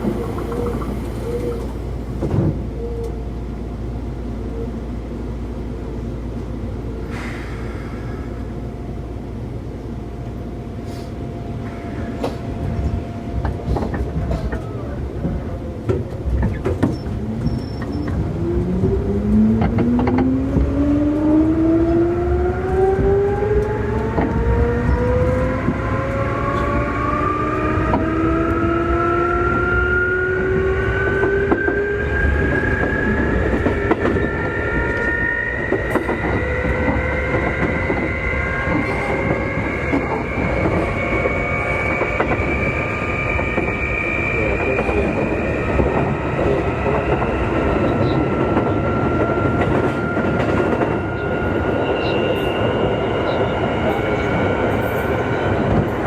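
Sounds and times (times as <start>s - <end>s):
rail joint clicks: 0.0s - 3.2s, 10.8s - 56.0s
train rolling rumble: 0.0s - 56.0s
train traction motors whining: 11.6s - 56.0s.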